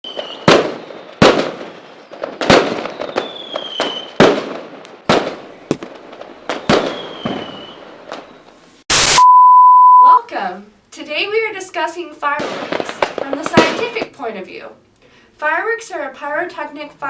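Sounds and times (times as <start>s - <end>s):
falling firework whistle: 0.0s - 1.4s, 2.0s - 4.2s, 6.5s - 9.3s
firework shells bursting: 0.1s - 9.2s.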